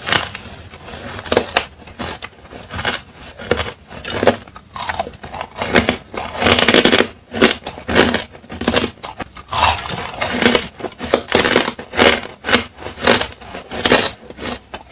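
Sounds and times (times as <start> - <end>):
ice being crunched: 0.0 - 14.9.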